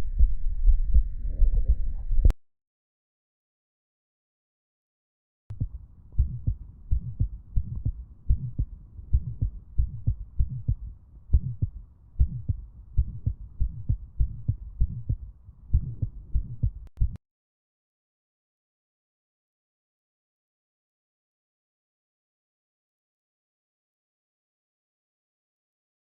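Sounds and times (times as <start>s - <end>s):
heartbeat through stethoscope: 0.0s - 2.3s, 5.5s - 17.2s.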